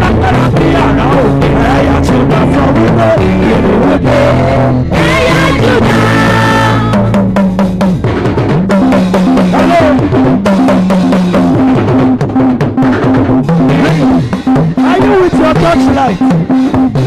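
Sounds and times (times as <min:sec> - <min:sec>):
person singing: 0:00.0 - 0:07.1
live gospel band music: 0:00.0 - 0:16.6
bass guitar: 0:00.0 - 0:17.0
keyboard chords: 0:00.0 - 0:17.0.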